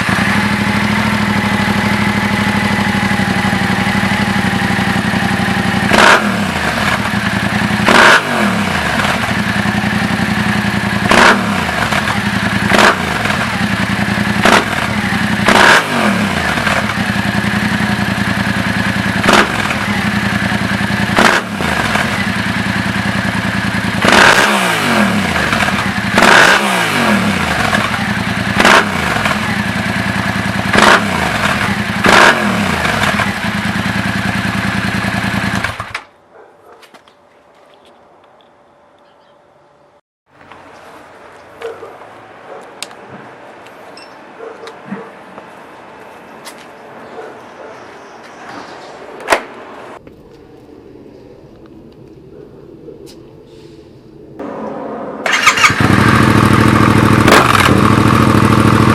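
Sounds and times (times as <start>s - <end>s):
motorcycle engine idling and revving: 0.0s - 36.2s, 54.3s - 58.9s.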